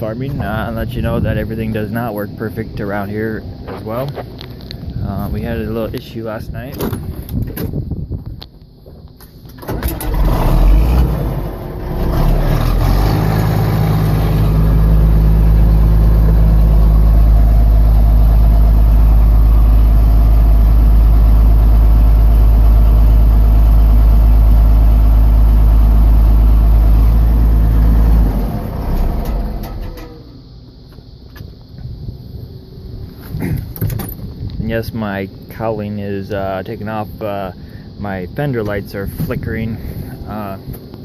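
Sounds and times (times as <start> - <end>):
tractor engine cranking and running: 9.2 - 31.6.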